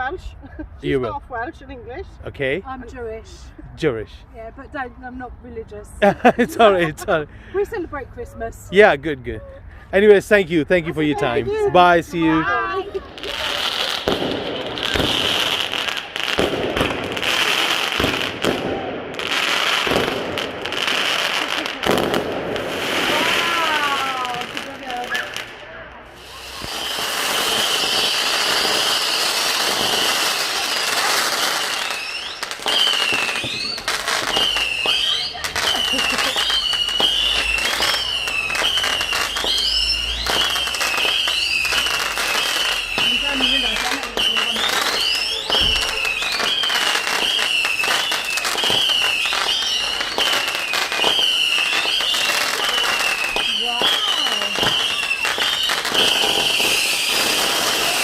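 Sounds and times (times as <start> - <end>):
fireworks bangs: 10.9 - 58.0
fireworks crackle: 10.9 - 58.0
high whistling tone: 26.2 - 57.1.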